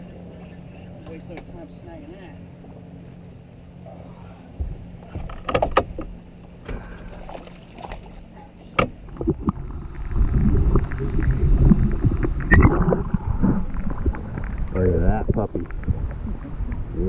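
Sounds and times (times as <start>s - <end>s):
water splashing and sloshing: 2.4s - 17.0s
knocks against a boat: 4.6s - 6.9s.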